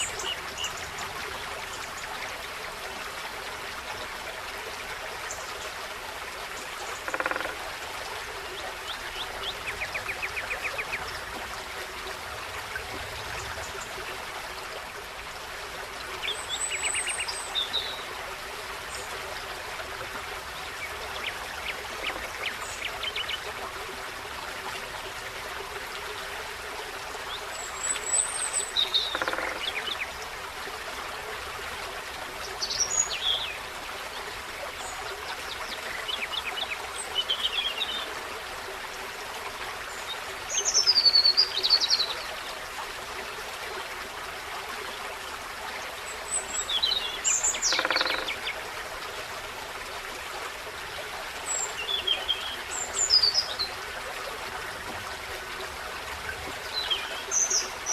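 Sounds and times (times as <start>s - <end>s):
stream babbling: 0.0s - 57.9s
songbird calls: 7.1s - 7.5s, 28.1s - 29.9s, 46.3s - 48.4s.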